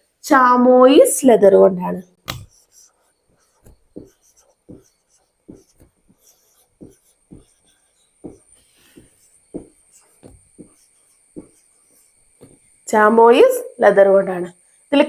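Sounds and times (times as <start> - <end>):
faint high-pitched whine: 0.0 - 15.0
soft irregular taps and rubbing: 2.2 - 12.8.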